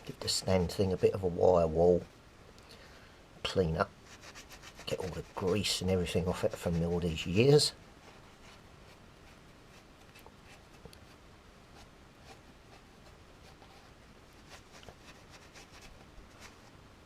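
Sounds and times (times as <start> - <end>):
wire wool scratching on steel: 4.1 - 7.7.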